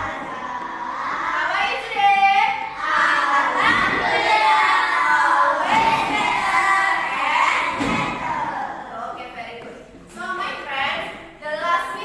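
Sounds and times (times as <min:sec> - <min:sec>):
group of voices singing: 0:02.7 - 0:08.6.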